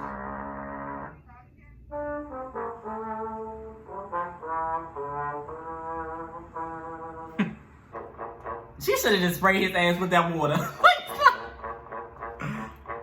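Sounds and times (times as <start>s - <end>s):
brass instrument held notes: 0.0s - 9.8s, 10.9s - 13.0s.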